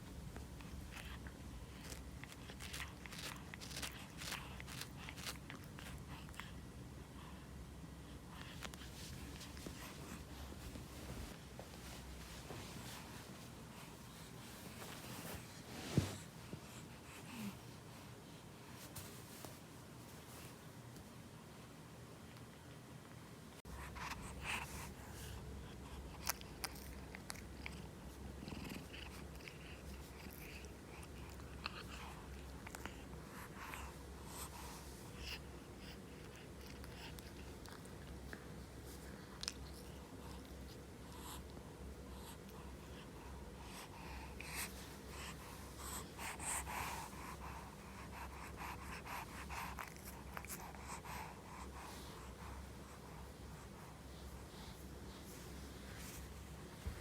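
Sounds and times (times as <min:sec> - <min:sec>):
soft rustles: 0:08.4 - 0:21.2, 0:44.4 - 0:57.0.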